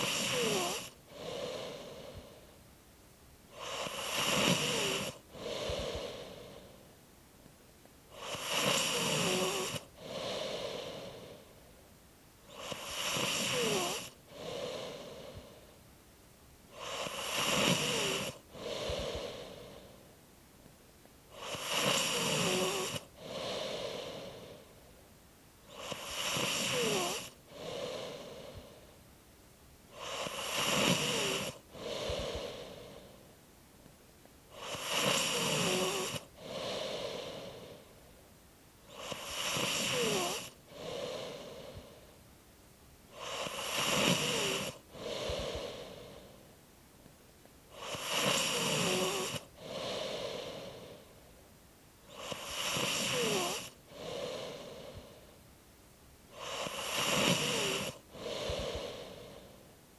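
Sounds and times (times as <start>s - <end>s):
person snoring: 0.0s - 2.5s, 3.5s - 6.9s, 8.1s - 11.6s, 12.4s - 15.7s, 16.7s - 20.0s, 21.3s - 24.8s, 25.6s - 28.9s, 29.9s - 33.2s, 34.5s - 38.0s, 38.8s - 42.2s, 43.1s - 46.5s, 47.7s - 51.2s, 52.0s - 55.3s, 56.3s - 59.7s.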